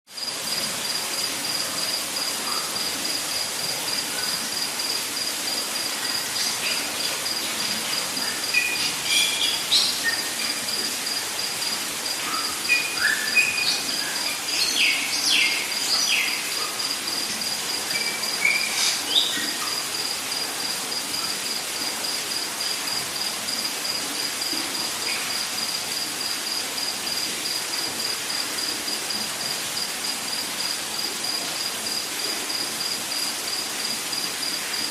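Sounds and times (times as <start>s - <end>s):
hiss of insects: 0.1s - 34.9s
pulsing high insect trill: 0.2s - 34.9s
bird chirps and whistles: 12.3s - 13.8s.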